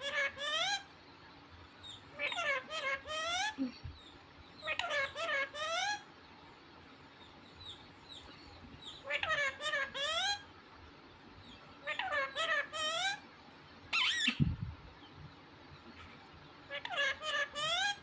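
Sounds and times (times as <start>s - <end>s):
parrot talking-like call: 0.0s - 0.9s, 2.1s - 3.6s, 4.6s - 6.1s, 8.9s - 10.5s, 11.8s - 13.2s, 13.9s - 14.4s, 16.7s - 18.0s.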